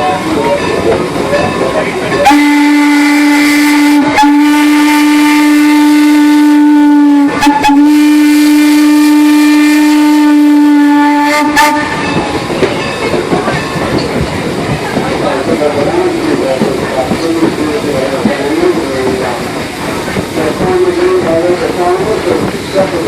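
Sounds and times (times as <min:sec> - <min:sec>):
steam locomotive whistle: 0:02.2 - 0:12.2.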